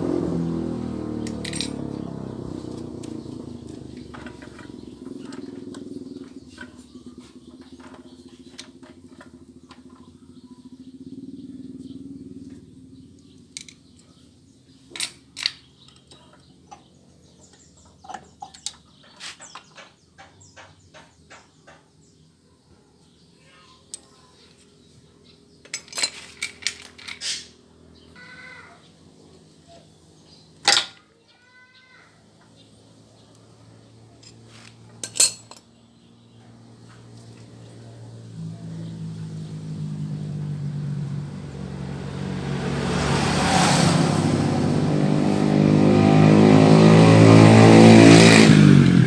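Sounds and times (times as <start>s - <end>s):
metal tools clinking: 1.3s - 1.8s, 25.6s - 27.5s, 34.2s - 35.7s.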